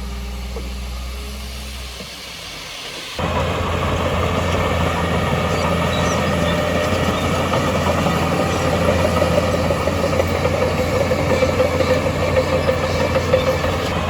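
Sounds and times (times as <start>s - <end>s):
heavy diesel engine running: 0.0s - 14.0s
steady machine whine: 0.0s - 14.0s.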